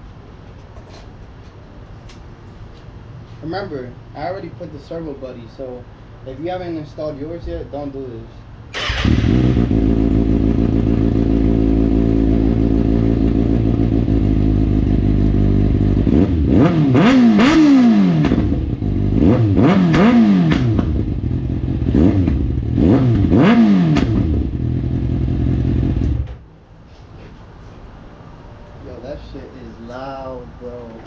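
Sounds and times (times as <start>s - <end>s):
motorcycle engine idling and revving: 8.8s - 26.4s.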